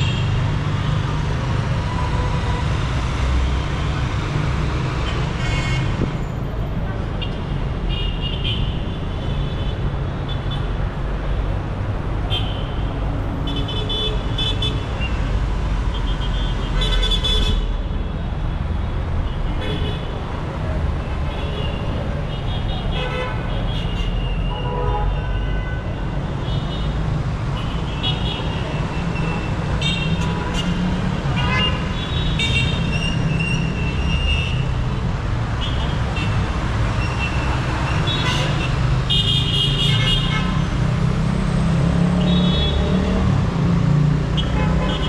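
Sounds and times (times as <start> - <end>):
traffic engines rumbling: 0.0 - 45.0
car and motorbike horns honking: 44.3 - 45.0.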